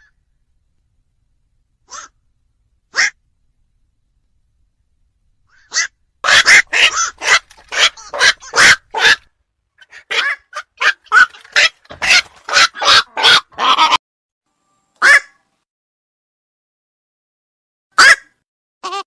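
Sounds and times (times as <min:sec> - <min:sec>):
heron barking calls: 0:01.8 - 0:02.2, 0:02.9 - 0:03.2, 0:05.5 - 0:14.0, 0:15.0 - 0:15.4, 0:18.0 - 0:18.4.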